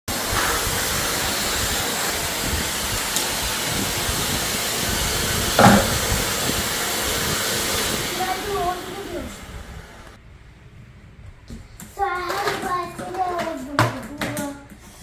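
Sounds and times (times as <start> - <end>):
vacuum cleaner running: 0.1 - 10.2
short knock: 5.6 - 6.2.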